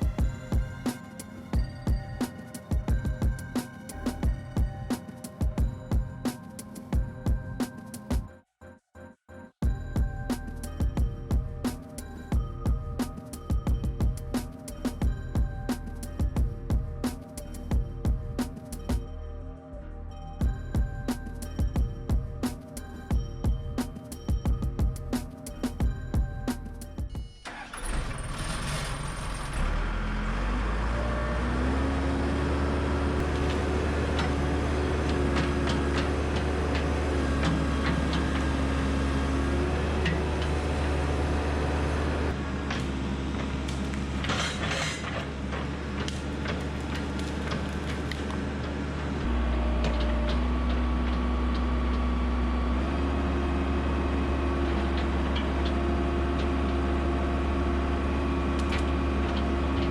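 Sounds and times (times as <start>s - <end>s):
backhoe diesel engine: 0.0s - 8.3s, 9.6s - 19.4s, 20.4s - 59.9s
metal clanks: 42.7s - 47.7s.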